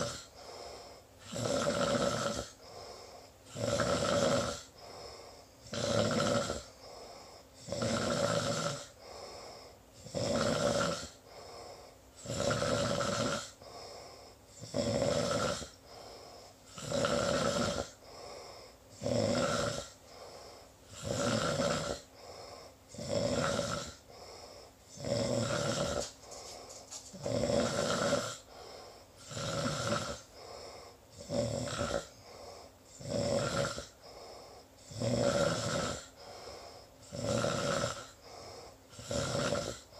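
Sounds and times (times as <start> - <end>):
soft breathing: 0.0 - 1.3, 2.5 - 3.5, 4.6 - 5.7, 6.6 - 7.6, 8.9 - 10.0, 11.1 - 12.2, 13.5 - 14.6, 15.6 - 16.8, 17.9 - 19.0, 19.9 - 21.0, 22.0 - 22.9, 24.0 - 27.3, 28.4 - 29.4, 30.1 - 31.3, 32.0 - 33.0, 33.8 - 34.9, 36.1 - 37.2, 38.0 - 39.1
person snoring: 0.0 - 39.9.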